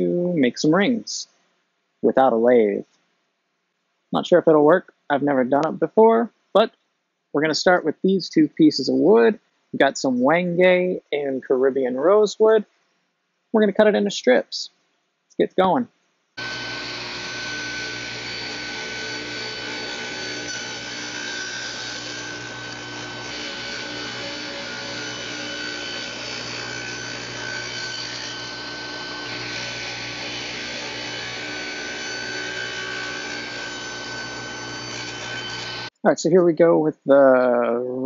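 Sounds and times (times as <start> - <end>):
power saw cutting wood: 16.4 - 35.9.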